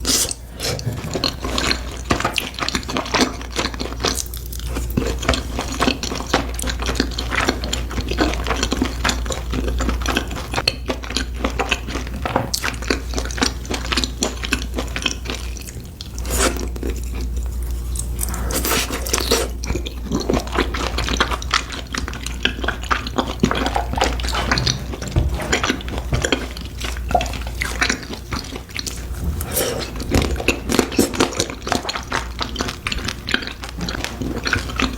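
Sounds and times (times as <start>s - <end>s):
chewing and crunching food: 0.0s - 34.9s
steady low hum: 15.2s - 33.4s.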